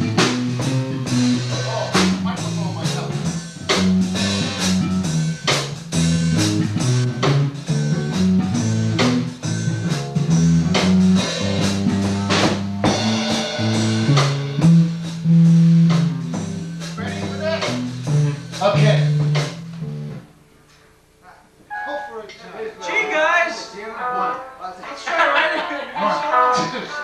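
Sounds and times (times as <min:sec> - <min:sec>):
drum hits: 0:00.0 - 0:20.2
moving bass line: 0:00.0 - 0:20.3
rock band playing: 0:00.0 - 0:20.3, 0:22.8 - 0:27.0.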